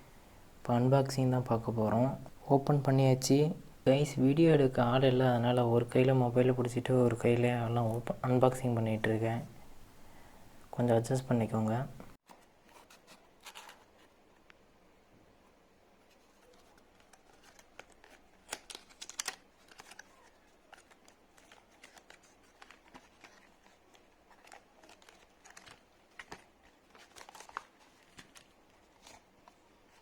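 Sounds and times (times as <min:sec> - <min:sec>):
packaging rustling: 0:12.6 - 0:14.4, 0:16.1 - 0:30.0.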